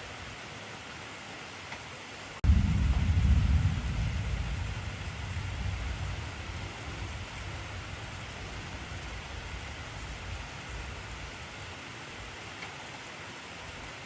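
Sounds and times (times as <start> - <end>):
heavy rain: 0.0 - 14.0
thunder rumbling: 2.4 - 11.8.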